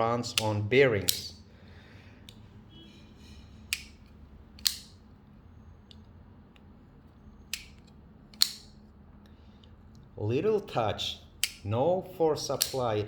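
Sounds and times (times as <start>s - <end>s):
knife blade metallic snaps: 0.3s - 1.4s, 3.7s - 4.0s, 4.6s - 5.0s, 7.5s - 8.8s, 11.4s - 11.7s, 12.5s - 12.9s.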